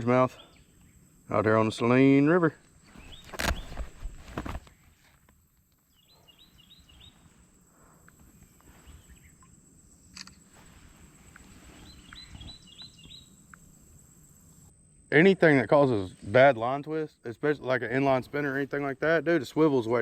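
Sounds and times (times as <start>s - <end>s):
bird chirping: 2.8s - 4.0s, 5.8s - 7.4s, 8.6s - 15.1s
sharp click: 10.1s - 10.4s.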